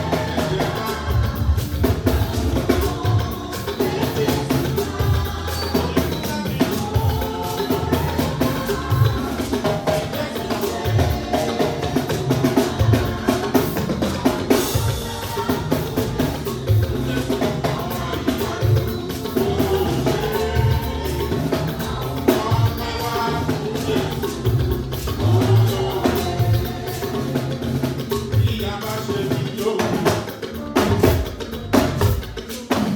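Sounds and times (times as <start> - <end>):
band music: 0.0 - 32.9
drum kit beat: 0.0 - 32.9.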